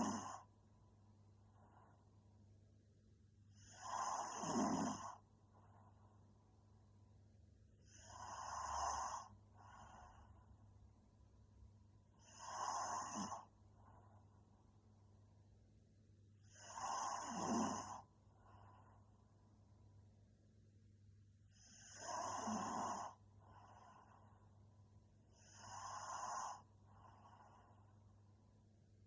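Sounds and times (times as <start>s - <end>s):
woman snoring: 0.0s - 0.5s, 3.5s - 5.2s, 7.8s - 10.3s, 12.2s - 13.5s, 16.4s - 18.1s, 21.5s - 24.1s, 25.3s - 27.6s
faint breath: 1.3s - 2.4s, 3.4s - 6.4s, 12.2s - 14.6s, 17.8s - 19.4s, 21.4s - 28.6s.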